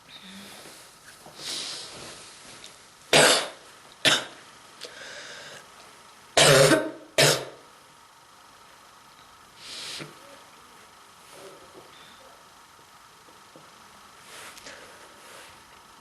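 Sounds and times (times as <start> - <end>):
person coughing: 3.1 - 4.4, 6.4 - 7.6.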